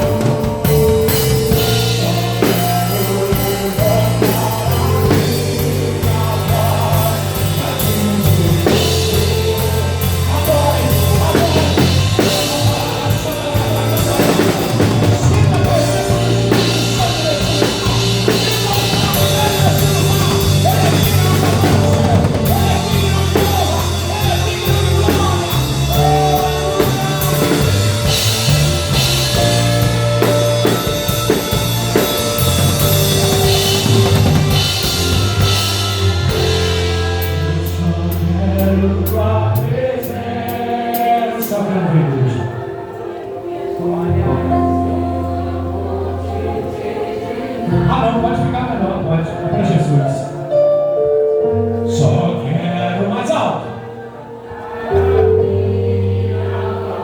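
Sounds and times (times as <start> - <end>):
electric bass notes: 0.0 - 40.5
drum kit with cymbals: 0.0 - 41.7
rock band playing: 0.0 - 52.2.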